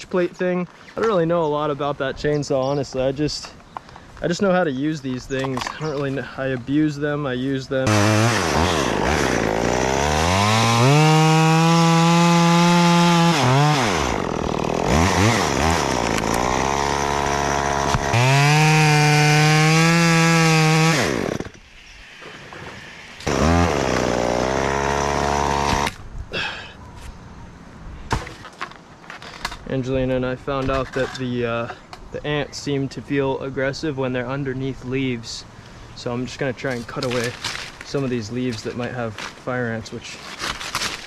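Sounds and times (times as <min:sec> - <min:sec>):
chainsaw revving: 0:07.8 - 0:21.6, 0:23.2 - 0:26.0.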